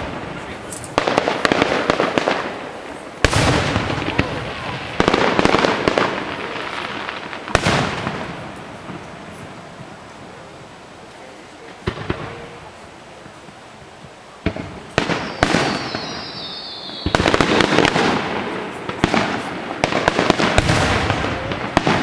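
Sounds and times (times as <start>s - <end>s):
firework bangs: 0.0s - 10.7s, 11.6s - 13.6s, 14.3s - 22.0s
firework crackling: 0.0s - 22.0s
falling firework whistle: 14.5s - 18.3s.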